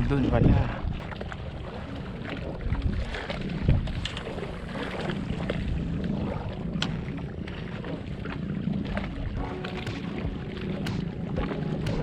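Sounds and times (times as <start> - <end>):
wind on microphone: 0.0 - 12.0
steady low rumble: 2.6 - 12.0.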